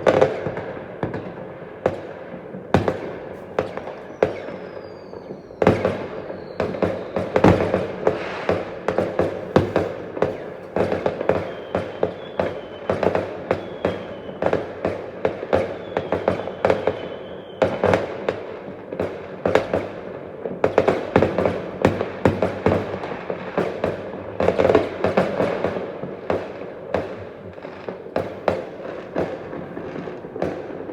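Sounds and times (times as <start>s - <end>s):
fireworks bangs and crackles: 0.0s - 30.9s
faint high firework whistle: 2.8s - 18.5s.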